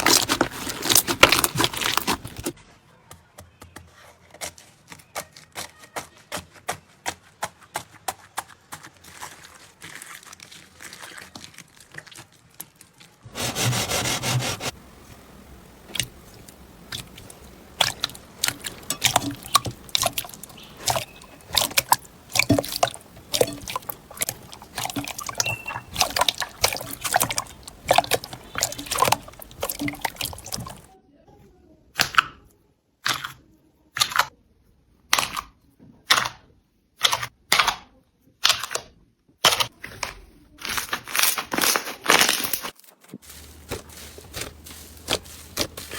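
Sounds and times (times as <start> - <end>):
slime crackling and squelching: 0.0 - 2.6, 8.3 - 30.9, 39.4 - 45.9.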